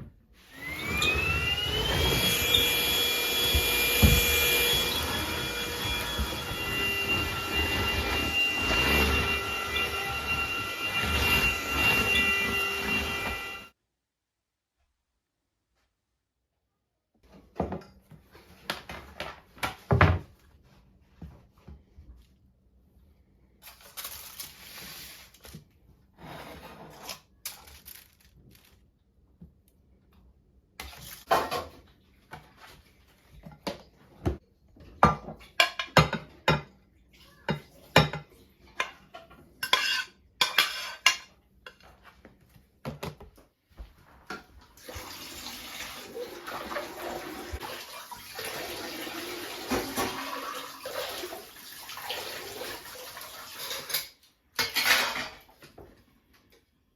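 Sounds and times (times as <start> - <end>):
dishes and cutlery clinking: 37.5 - 42.0, 53.7 - 55.5
running water: 44.8 - 54.0.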